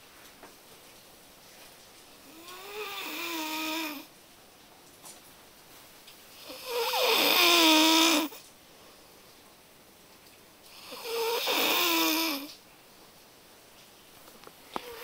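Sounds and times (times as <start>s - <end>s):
person snoring: 2.3s - 4.1s, 6.4s - 8.4s, 10.7s - 12.5s.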